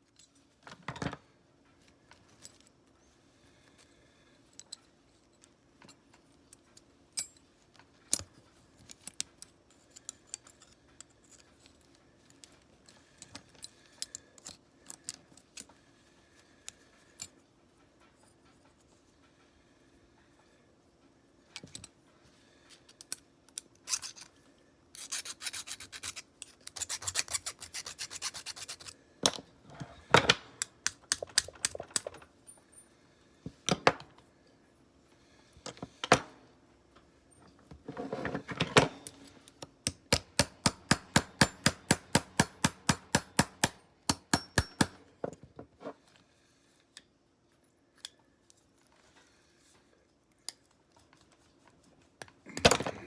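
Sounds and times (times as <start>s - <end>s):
filing strokes on metal: 25.0s - 29.0s.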